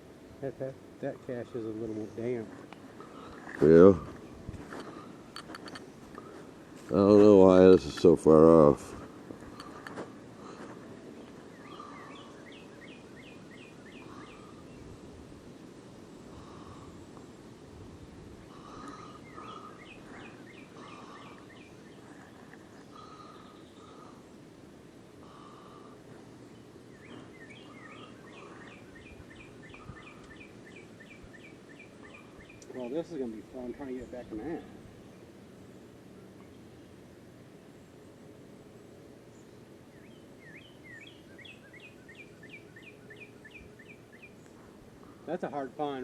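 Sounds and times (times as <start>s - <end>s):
low background noise: 0.0s - 46.0s
outdoor background hiss: 0.0s - 46.0s
songbird singing: 0.0s - 46.0s.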